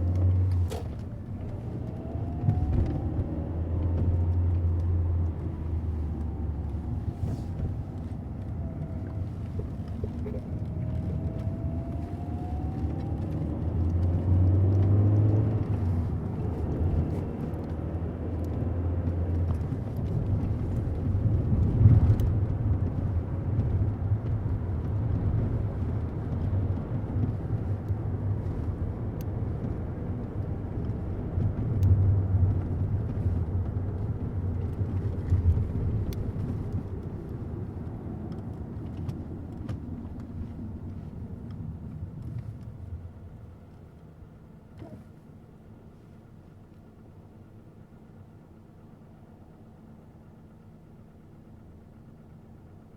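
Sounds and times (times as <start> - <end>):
car engine and road rumble: 0.0 - 52.9
rising whine: 1.1 - 15.8.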